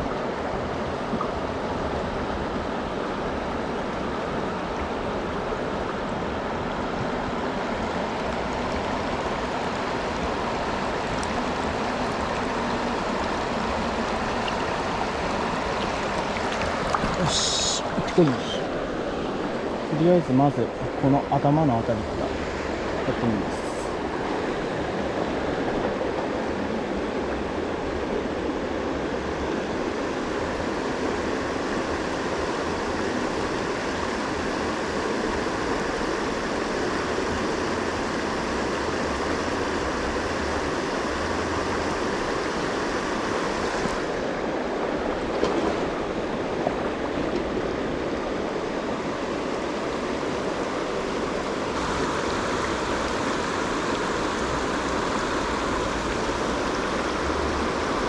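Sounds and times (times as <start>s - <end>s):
river rapids rushing: 0.0s - 58.0s.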